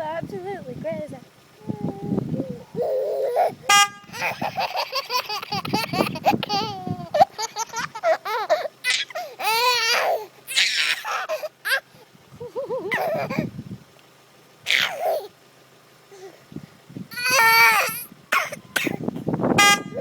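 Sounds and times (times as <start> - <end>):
baby laughing and squealing: 1.6 - 13.5, 14.7 - 15.4, 17.1 - 19.0
car horn beep: 3.7 - 4.2, 19.5 - 20.0.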